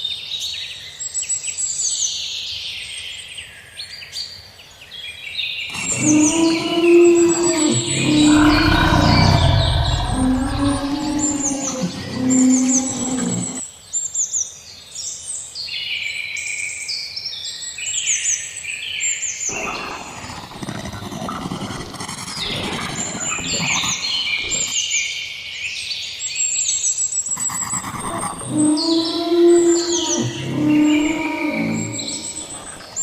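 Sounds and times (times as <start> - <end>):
birds chirping and whistling: 5.7 - 13.6, 27.4 - 33.0
low rough rumbling: 5.7 - 13.6, 28.0 - 33.0.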